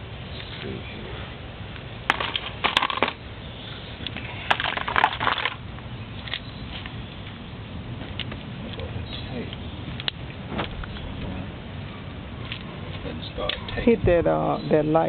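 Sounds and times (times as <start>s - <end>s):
crackling handling noise: 1.7s - 3.2s, 4.0s - 5.6s.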